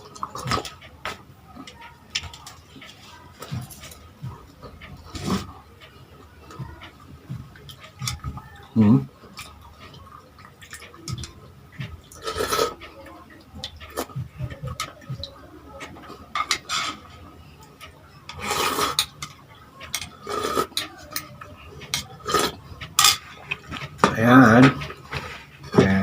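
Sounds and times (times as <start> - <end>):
utensils clinking on plates: 15.7 - 26.0.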